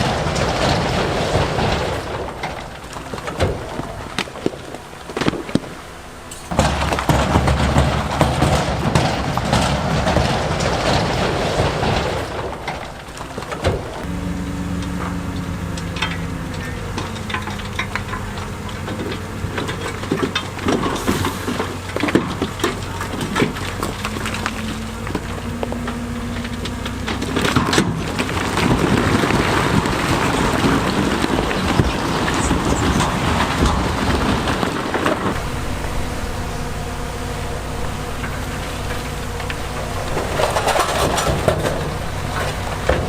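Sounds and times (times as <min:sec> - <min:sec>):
heavy machinery diesel engines: 0:00.0 - 0:43.0
loud rushing noise: 0:35.1 - 0:43.0.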